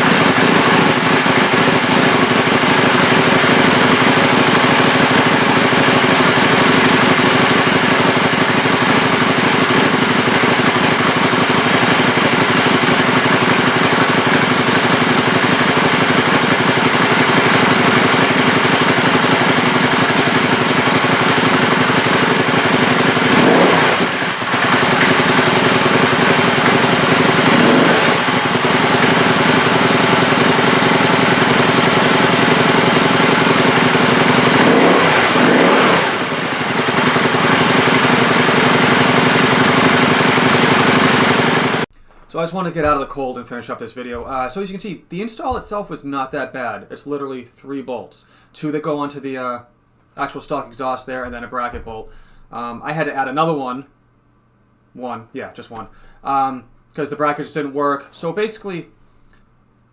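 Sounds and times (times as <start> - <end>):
engine revving: 0.0 - 41.9
motorcycle engine idling: 0.0 - 42.0.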